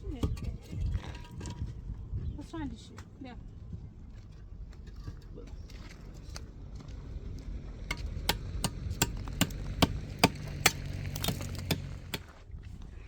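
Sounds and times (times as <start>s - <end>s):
sharp hammering blows: 7.9s - 12.3s.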